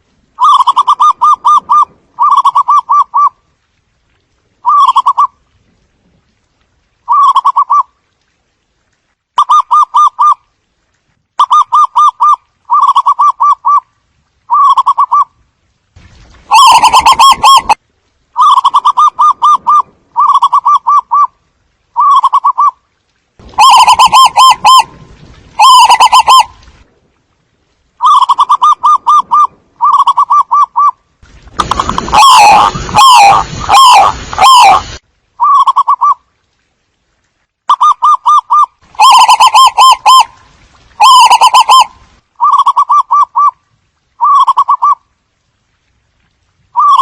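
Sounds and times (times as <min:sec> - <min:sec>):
dove cooing: 0:37.8 - 0:40.3.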